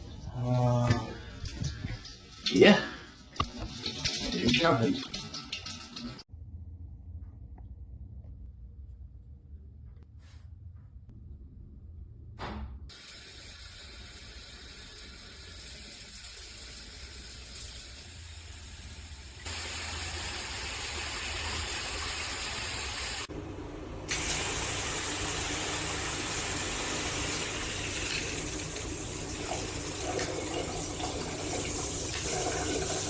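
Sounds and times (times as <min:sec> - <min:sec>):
shower head spraying water: 0:12.9 - 0:23.3, 0:24.1 - 0:33.0.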